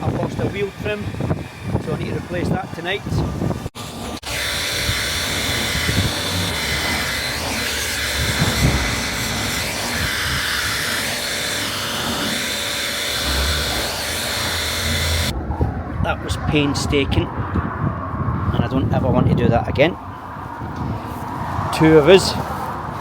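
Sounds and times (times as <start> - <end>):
hot-air gun running: 3.8 - 15.3.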